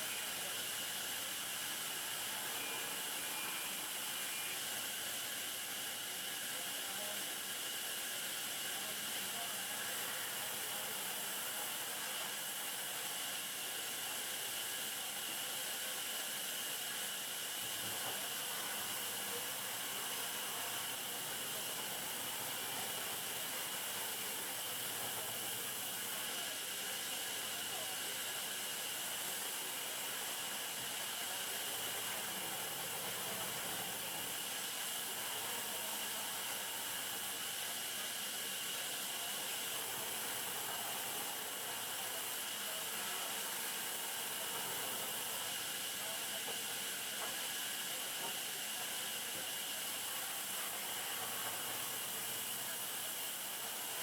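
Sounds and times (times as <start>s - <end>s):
sawmill machinery hissing: 14.1s - 54.0s.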